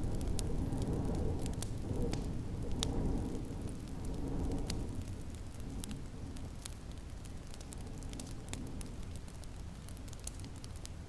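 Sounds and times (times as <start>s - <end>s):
wood fire crackling: 0.0s - 11.0s.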